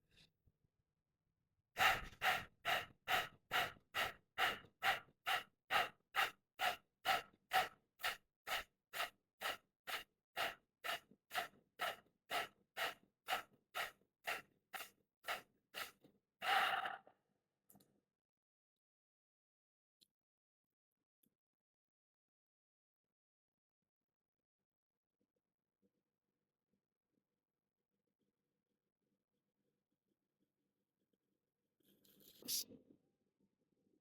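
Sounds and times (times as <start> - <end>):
rapid forceful nose breathing: 1.8 - 16.8.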